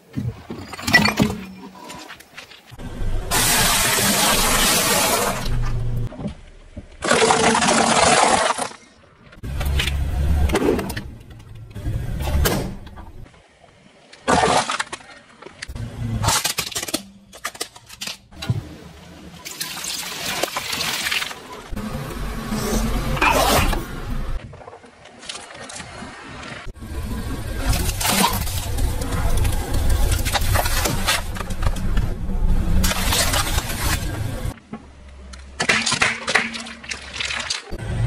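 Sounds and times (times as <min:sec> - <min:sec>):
tyres crushing objects: 0:03.7 - 0:09.0, 0:35.4 - 0:37.7.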